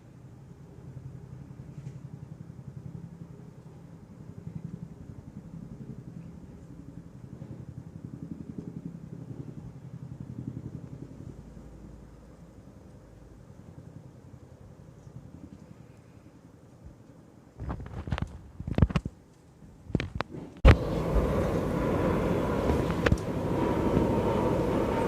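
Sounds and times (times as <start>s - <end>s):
helicopter rotors thudding: 19.8s - 25.0s.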